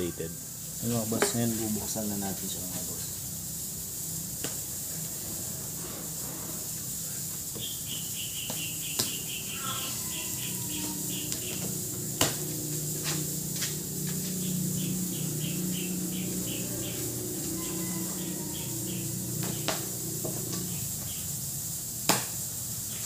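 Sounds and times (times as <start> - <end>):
steady low hum: 0.0 - 23.0
bird chirping high notes: 7.6 - 11.8, 14.3 - 21.3.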